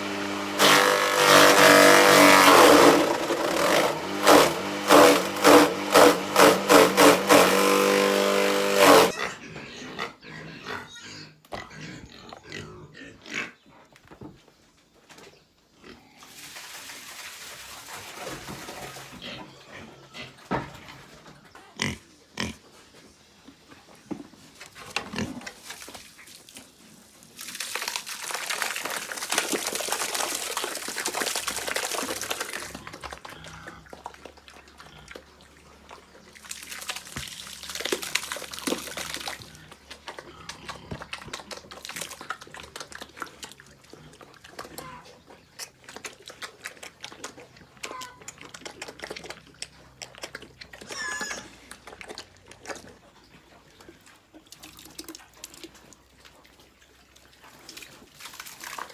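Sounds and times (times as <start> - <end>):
pigs grunting: 9.0 - 13.8, 19.1 - 22.7, 32.5 - 36.2, 39.4 - 54.2.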